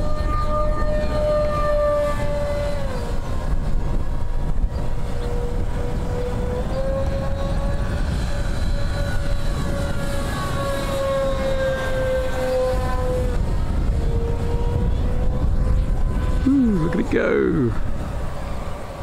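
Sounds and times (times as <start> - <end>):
model plane motor whining: 0.0 - 19.0
wind rumble: 0.0 - 19.0.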